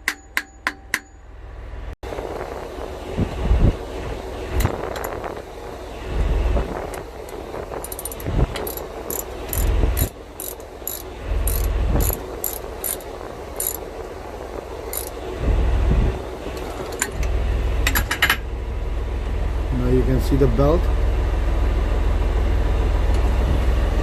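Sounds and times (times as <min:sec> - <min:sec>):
ratchet wrench clicking: 0:07.2 - 0:13.8, 0:14.9 - 0:15.2.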